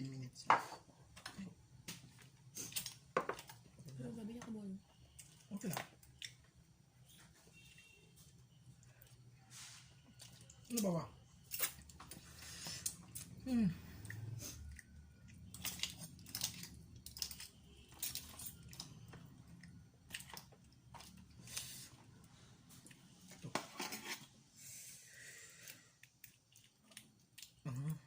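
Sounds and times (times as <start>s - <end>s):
chewing and crunching seafood: 4.9s - 6.8s, 8.6s - 23.3s, 25.5s - 28.0s.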